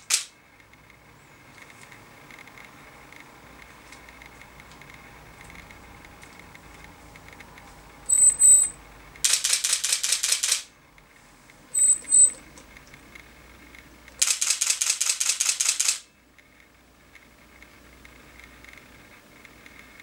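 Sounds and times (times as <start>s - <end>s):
camera lens clicking rattle: 0.0s - 0.9s, 9.2s - 10.7s, 13.7s - 16.1s
short high beeps: 8.1s - 8.8s, 11.7s - 12.4s.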